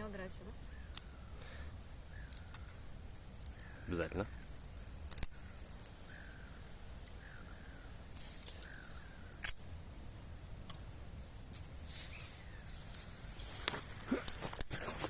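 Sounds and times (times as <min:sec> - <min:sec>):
bird calling: 0:00.0 - 0:09.6
brushwood rustling: 0:00.0 - 0:15.0
dry twigs snapping: 0:00.6 - 0:01.2, 0:01.8 - 0:07.4, 0:08.2 - 0:15.0.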